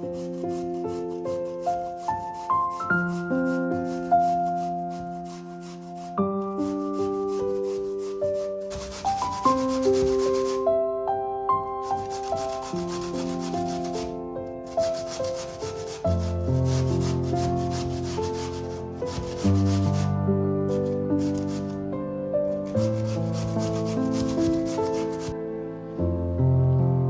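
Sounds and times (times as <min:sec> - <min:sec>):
gentle background music: 0:00.0 - 0:27.0
vegetables rasping on a grater: 0:11.9 - 0:20.1.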